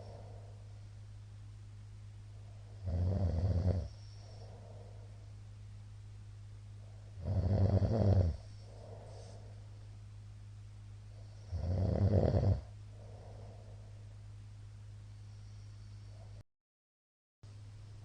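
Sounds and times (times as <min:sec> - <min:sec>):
steady low hum: 0:00.0 - 0:16.4, 0:17.4 - 0:18.0
man snoring: 0:02.8 - 0:04.4, 0:07.2 - 0:09.3, 0:11.4 - 0:12.7
soft breaths out: 0:08.4 - 0:09.9.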